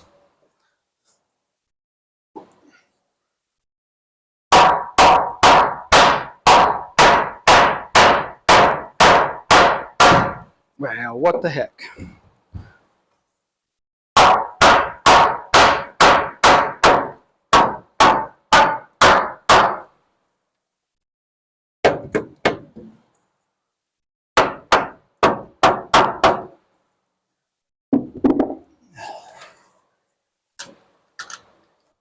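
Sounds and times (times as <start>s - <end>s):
hammer striking nails into wood: 4.5s - 10.5s, 14.2s - 19.9s, 21.8s - 23.0s, 24.4s - 26.6s.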